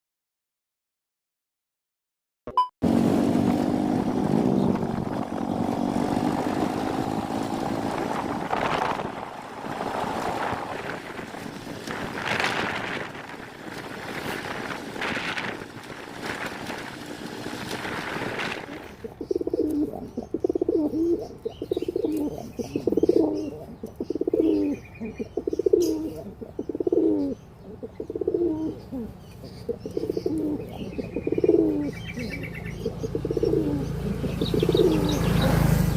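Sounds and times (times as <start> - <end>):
steady rushing noise: 3.1 - 19.2
pigeons cooing: 4.4 - 35.9.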